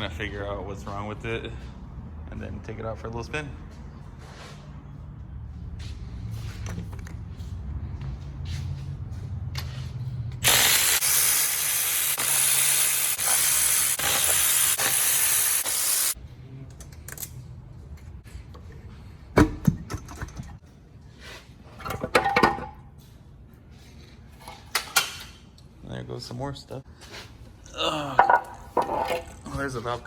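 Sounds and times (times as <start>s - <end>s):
power ratchet buzzing: 10.4s - 16.2s.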